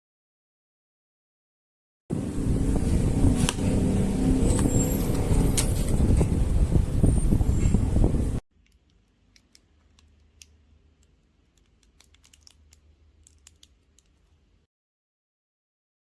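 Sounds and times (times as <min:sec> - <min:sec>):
loud steady rumbling: 0:02.1 - 0:08.4
mechanical keyboard clicks: 0:08.6 - 0:14.2.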